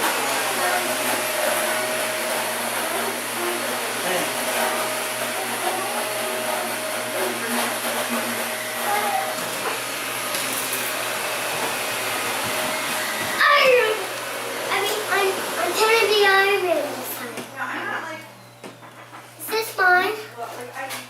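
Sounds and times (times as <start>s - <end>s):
fan whooshing: 0.0s - 18.1s
faint voices: 0.0s - 18.4s.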